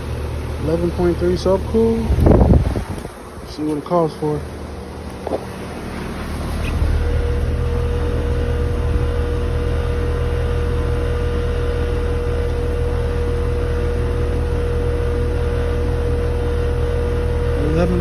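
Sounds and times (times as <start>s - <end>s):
high machine whine: 0.0s - 18.0s
low machine hum: 0.0s - 18.0s.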